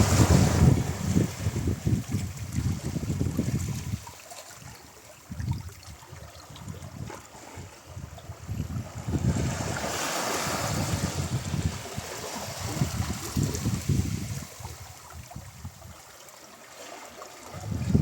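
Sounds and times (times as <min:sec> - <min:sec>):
ocean surf breaking: 0:00.0 - 0:01.9, 0:09.2 - 0:13.8
wind rumble on microphone: 0:00.0 - 0:16.1, 0:17.4 - 0:18.0.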